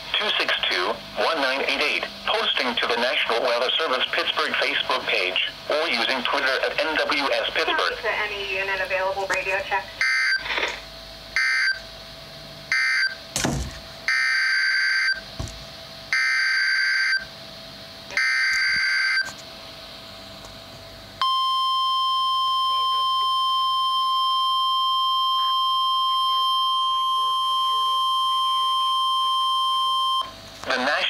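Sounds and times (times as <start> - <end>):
steady warning alarm tone: 10.0 - 10.5, 11.3 - 11.9, 12.7 - 13.2, 14.0 - 15.3, 16.1 - 17.3, 18.1 - 19.4, 21.2 - 30.3.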